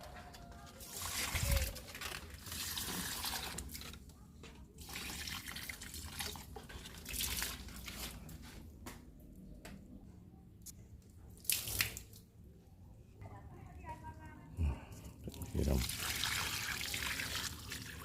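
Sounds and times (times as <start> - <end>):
water pouring and splashing: 0.7 - 4.1, 4.7 - 8.4, 11.4 - 12.2, 15.3 - 18.0.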